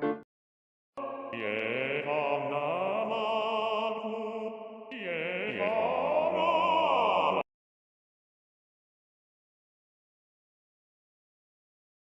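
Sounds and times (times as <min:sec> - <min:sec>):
chant-like vocal music: 0:01.0 - 0:07.5.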